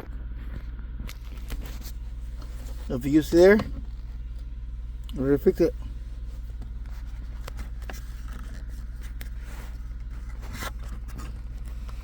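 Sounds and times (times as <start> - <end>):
steady low hum: 0.0 - 12.0
plastic parts clicking and scraping: 6.5 - 12.0.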